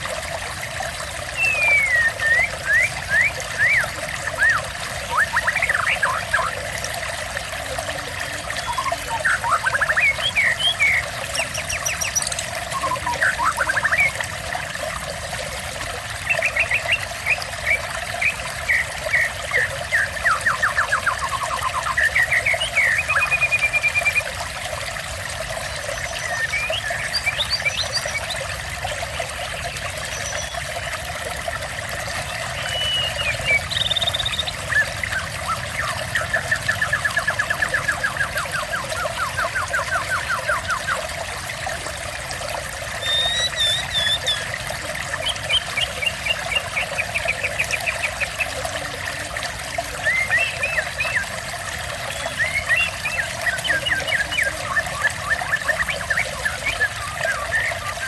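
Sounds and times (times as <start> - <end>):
water trickling and pouring: 0.0 - 58.0
songbird chirping: 32.4 - 41.0, 43.0 - 44.4.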